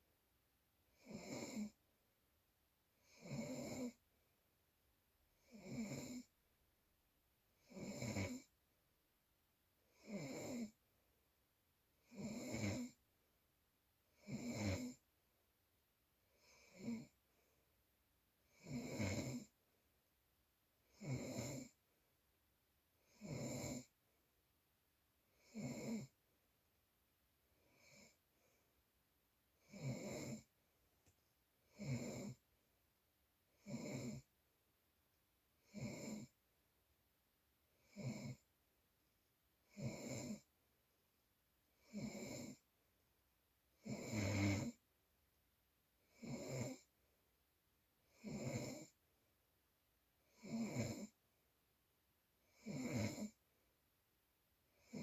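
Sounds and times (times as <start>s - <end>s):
rhythmic snoring: 0.9s - 1.8s, 3.0s - 4.0s, 5.4s - 6.3s, 7.6s - 8.5s, 9.9s - 10.8s, 12.0s - 13.0s, 14.2s - 15.0s, 16.4s - 17.2s, 18.5s - 19.6s, 20.9s - 21.8s, 23.1s - 24.0s, 25.4s - 26.2s, 27.7s - 28.2s, 29.6s - 30.5s, 31.7s - 32.4s, 33.6s - 34.3s, 35.6s - 36.4s, 37.8s - 38.5s, 39.7s - 40.5s, 41.8s - 42.7s, 43.8s - 44.8s, 46.1s - 46.9s, 48.1s - 49.0s, 50.3s - 51.2s, 52.5s - 53.4s, 54.8s - 55.0s.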